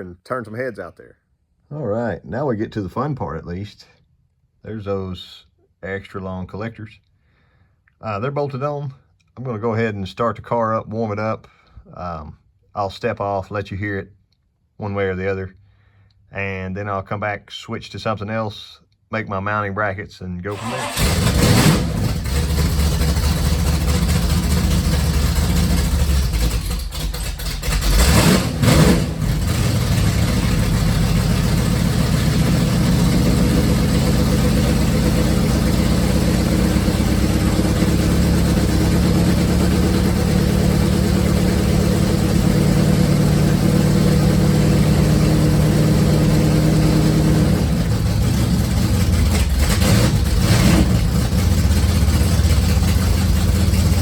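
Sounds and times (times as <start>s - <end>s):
car engine idling loudly: 20.5s - 54.0s.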